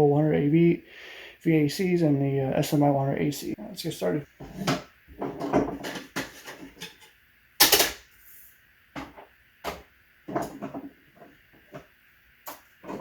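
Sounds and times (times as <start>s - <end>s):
hard objects clicking and knocking: 4.5s - 8.0s.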